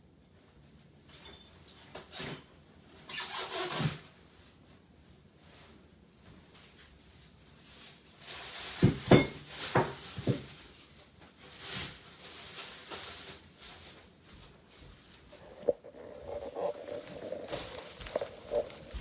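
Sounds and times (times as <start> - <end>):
scraping and shuffling: 14.8 - 19.0.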